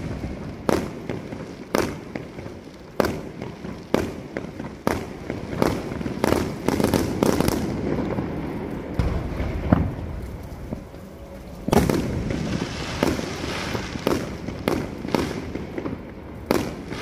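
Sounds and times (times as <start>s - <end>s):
fireworks bursting: 0.0s - 17.0s
rumbling crackle: 4.3s - 17.0s.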